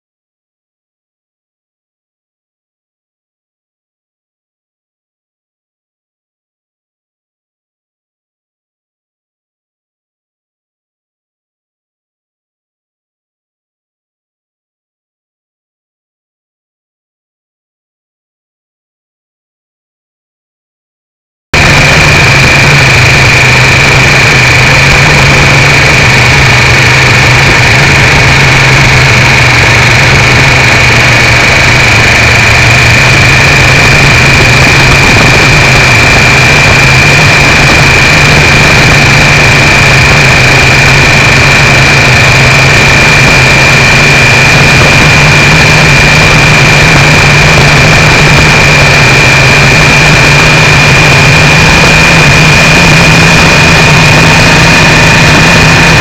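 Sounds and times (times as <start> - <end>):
motorcycle engine cruising: 21.6 - 56.0
roar of noise and distortion: 21.6 - 56.0
steady high-pitched whine: 21.6 - 56.0.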